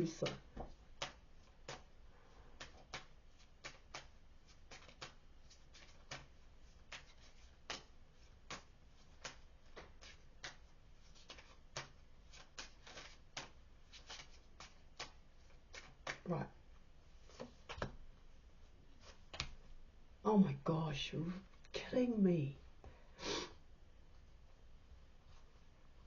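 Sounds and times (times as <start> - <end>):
cards being shuffled: 0.2 - 2.0, 2.6 - 16.3, 17.2 - 18.0, 19.0 - 19.7.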